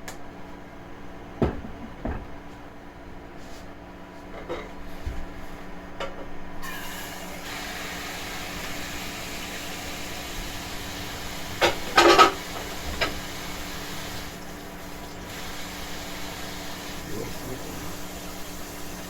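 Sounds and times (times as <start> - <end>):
steady hiss: 6.8 - 19.0.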